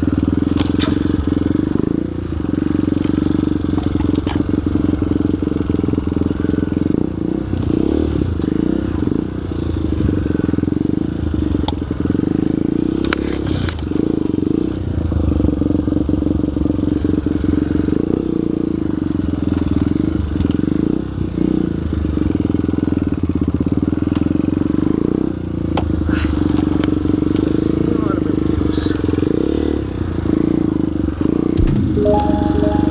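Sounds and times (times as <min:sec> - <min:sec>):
sharp knock: 0:00.8 - 0:01.2, 0:31.6 - 0:32.9.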